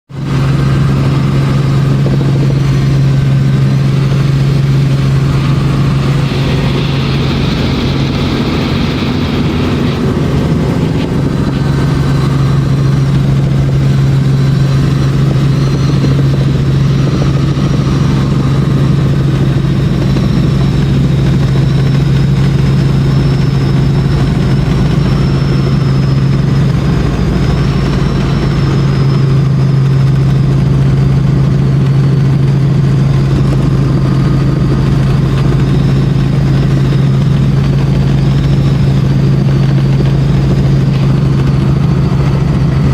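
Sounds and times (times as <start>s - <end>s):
helicopter engine and rotor drone: 0.1s - 42.9s
faint high whine: 0.2s - 30.6s.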